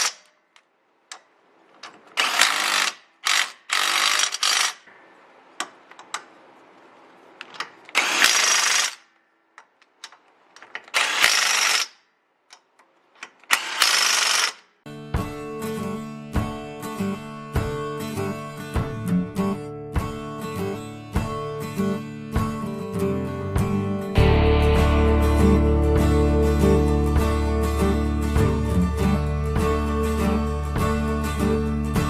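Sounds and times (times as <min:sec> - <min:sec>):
clicks and ratcheting: 0:00.0 - 0:04.9
power tool bursts: 0:02.2 - 0:04.8, 0:07.9 - 0:09.1, 0:10.9 - 0:12.0, 0:13.5 - 0:14.7
guitar music: 0:14.9 - 0:32.0.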